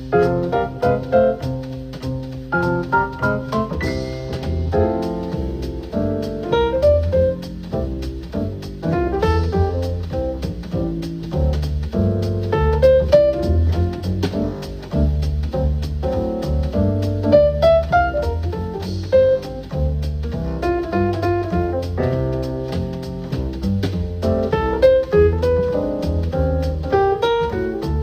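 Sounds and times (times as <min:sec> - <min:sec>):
jazz with double bass and piano: 0:00.0 - 0:28.0.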